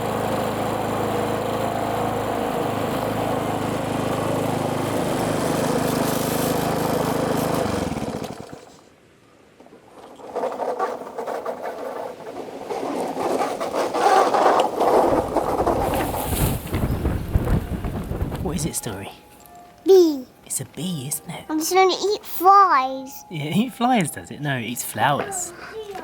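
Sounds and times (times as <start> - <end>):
lawnmower engine running: 0.0 - 8.8, 10.2 - 19.1
scraping and rustling: 9.7 - 18.3.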